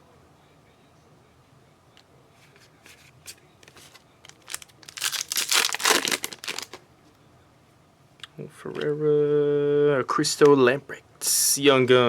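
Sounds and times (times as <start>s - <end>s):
wrapper tearing and crinkling: 3.7s - 6.8s.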